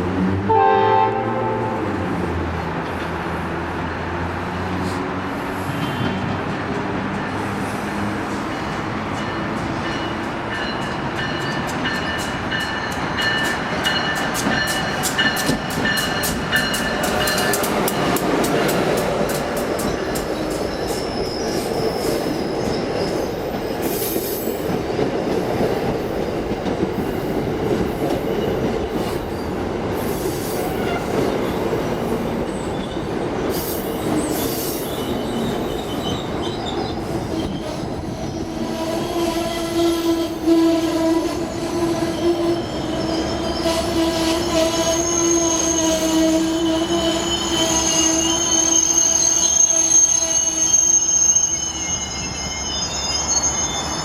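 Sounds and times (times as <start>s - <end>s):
train wheels rumbling on rail: 0.0s - 54.0s
train clanks: 2.4s - 44.8s
high brake squealing: 19.9s - 24.6s, 33.6s - 54.0s.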